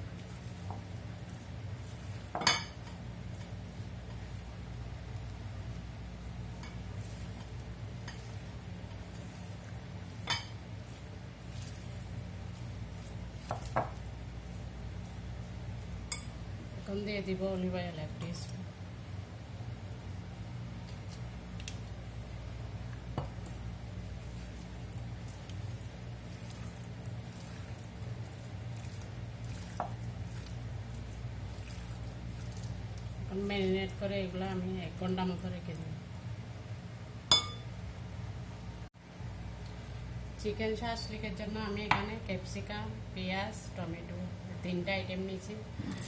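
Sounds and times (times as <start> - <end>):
wet squishes of mixing meat: 0.0 - 17.2, 20.8 - 35.8
steady low hum: 0.0 - 46.0
utensil scraping and clinking bowl: 0.1 - 4.4, 6.5 - 16.4, 24.2 - 34.4.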